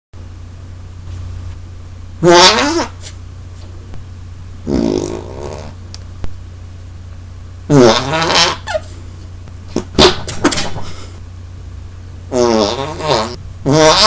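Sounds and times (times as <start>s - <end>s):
armpit farts: 2.2s - 3.2s, 4.6s - 5.8s, 7.7s - 8.9s, 9.7s - 11.0s, 12.3s - 14.0s.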